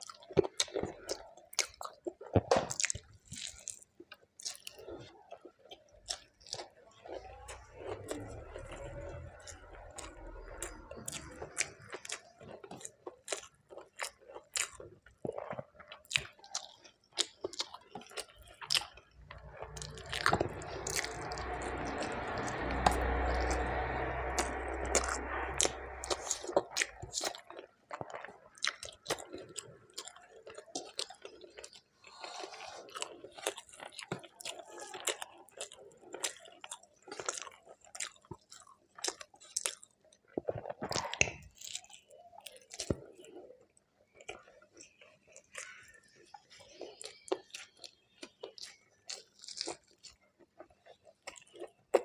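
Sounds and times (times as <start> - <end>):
chewing food: 0.0 - 52.0
steady rushing noise: 19.2 - 26.7.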